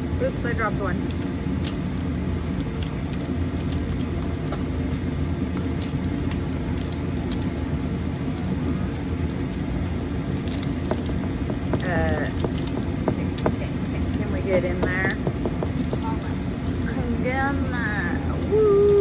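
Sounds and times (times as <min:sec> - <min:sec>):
low background rumble: 0:00.0 - 0:19.0
clicks and taps of handling: 0:10.4 - 0:16.2.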